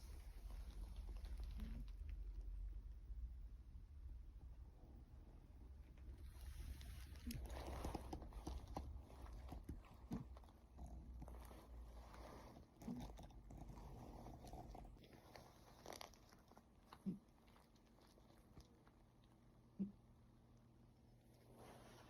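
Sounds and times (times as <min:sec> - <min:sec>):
cat snoring faintly: 0:06.2 - 0:16.0.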